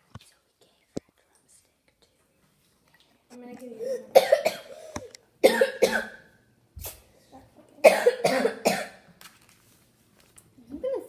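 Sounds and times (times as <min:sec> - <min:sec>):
child coughing: 0:03.8 - 0:06.2, 0:07.8 - 0:09.0.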